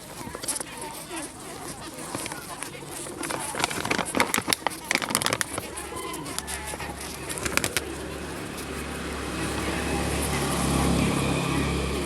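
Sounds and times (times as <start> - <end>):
honeybees buzzing: 0.0 - 12.0
scattered clicks: 0.2 - 8.2.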